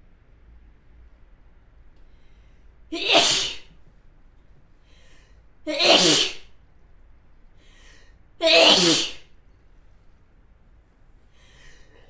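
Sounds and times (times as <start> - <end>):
woman sneezing: 3.0 - 3.7, 5.7 - 6.4, 8.4 - 9.2.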